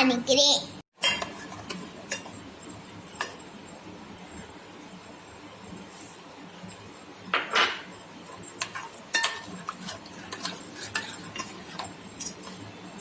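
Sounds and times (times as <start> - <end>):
spoon scraping in a bowl: 1.0 - 3.5, 7.8 - 13.0
spoon clinking against bowl: 7.3 - 13.0.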